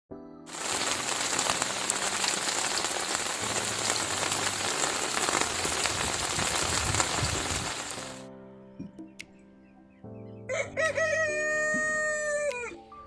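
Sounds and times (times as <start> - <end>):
heavy rain falling: 0.5 - 8.3.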